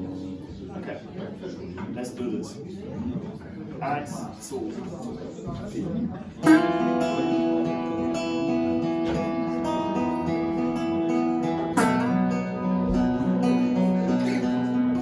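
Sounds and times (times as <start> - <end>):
acoustic guitar strummed chords: 6.4 - 15.0.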